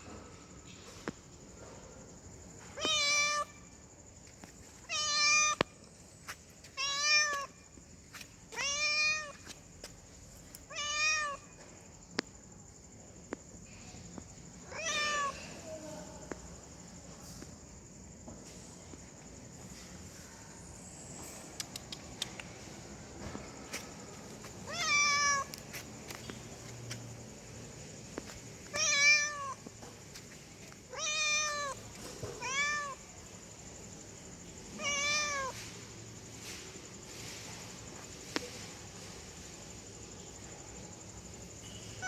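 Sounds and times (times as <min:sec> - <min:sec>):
cat meowing: 0:02.8 - 0:03.6, 0:04.8 - 0:05.7, 0:06.8 - 0:07.6, 0:08.5 - 0:09.4, 0:10.7 - 0:11.5, 0:14.7 - 0:15.4, 0:24.6 - 0:25.6, 0:28.7 - 0:29.7, 0:30.9 - 0:33.0, 0:34.8 - 0:35.6
faint ticks: 0:21.2 - 0:27.2.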